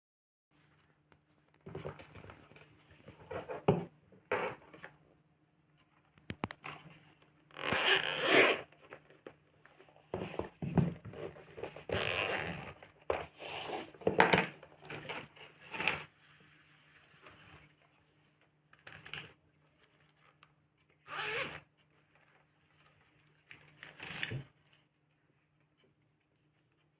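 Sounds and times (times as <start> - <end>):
rasping and rustling of items: 0.6 - 5.0, 5.8 - 26.9
zipper pulls: 7.5 - 8.7, 11.8 - 14.0, 21.0 - 21.6.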